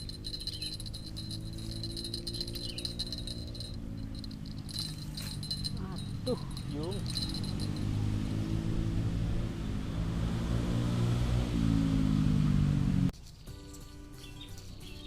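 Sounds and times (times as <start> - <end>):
vehicle engine running: 0.0 - 13.2.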